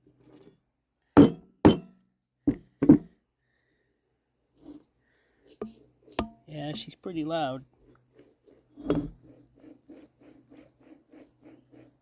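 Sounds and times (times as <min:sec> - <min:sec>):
metallic knocks with ringing: 0:01.2 - 0:03.1.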